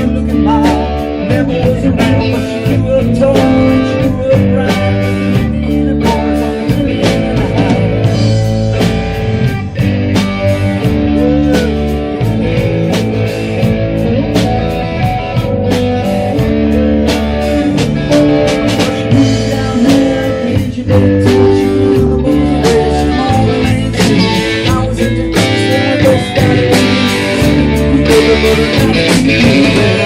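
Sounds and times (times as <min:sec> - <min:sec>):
live blues-rock band: 0:00.0 - 0:30.0.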